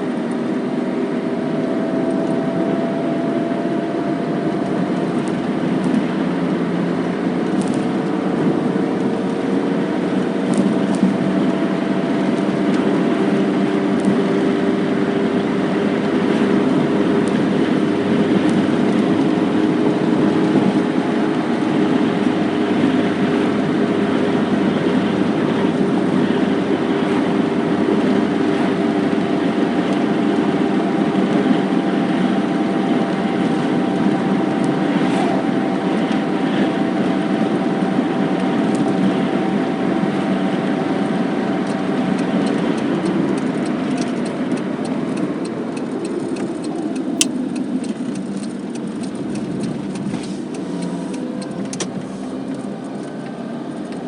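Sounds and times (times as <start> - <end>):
car engine and road noise: 0.0 - 54.0.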